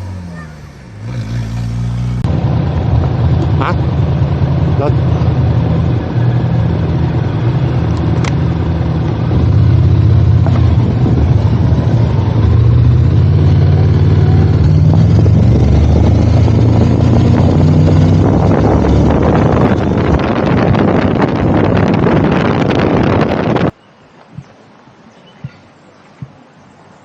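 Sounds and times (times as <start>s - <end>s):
motorcycle engine running: 0.0s - 3.8s
wind noise on microphone: 7.8s - 25.6s.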